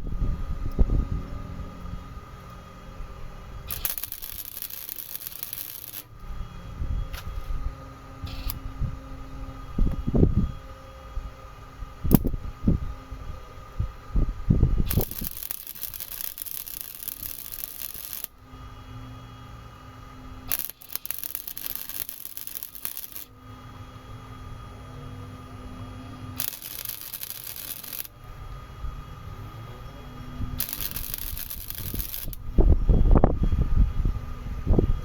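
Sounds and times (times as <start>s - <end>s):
welding arc hissing and crackling: 3.5s - 6.2s, 8.3s - 8.6s, 14.8s - 18.8s, 20.3s - 23.8s, 26.3s - 28.2s, 30.5s - 32.7s.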